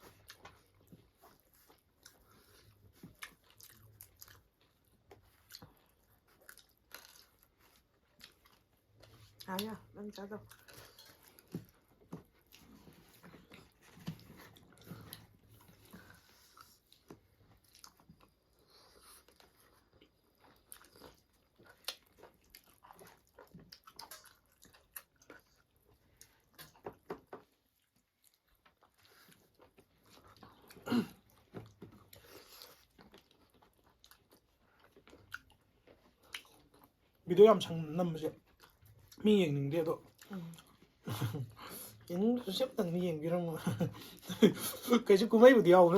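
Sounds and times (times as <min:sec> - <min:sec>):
chewing and biting: 0:00.0 - 0:45.9
small crunches and mouth clicks: 0:10.4 - 0:37.2.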